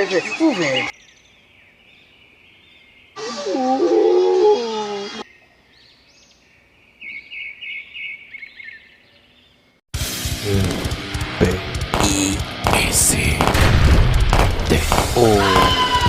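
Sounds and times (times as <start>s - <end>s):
loud music: 10.0s - 16.0s
sound effects: 10.0s - 16.0s.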